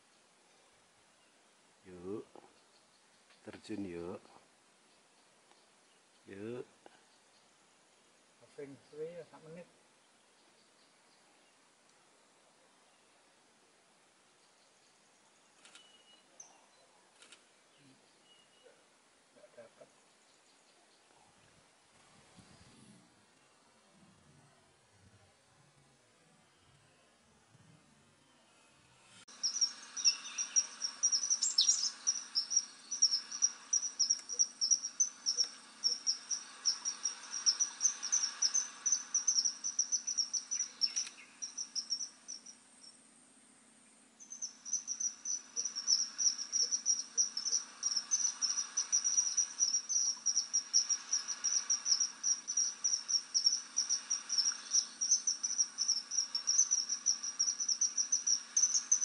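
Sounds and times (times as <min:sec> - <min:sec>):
short rising chirp: 0:29.3 - 0:42.6, 0:44.2 - 0:59.0
insect chirring: 0:29.3 - 0:43.1, 0:44.2 - 0:59.0.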